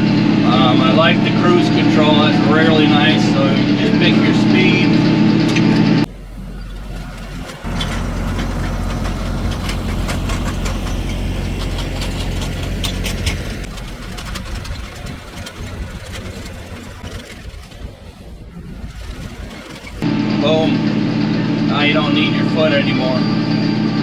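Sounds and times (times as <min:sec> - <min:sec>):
tractor diesel engine running: 0:00.0 - 0:24.0
clicks and crackles: 0:06.7 - 0:18.0.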